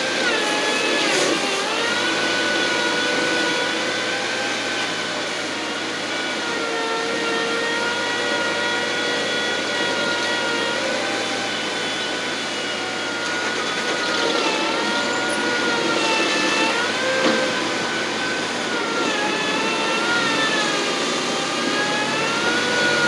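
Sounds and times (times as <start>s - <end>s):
landscaping equipment engine running: 11.2s - 23.0s.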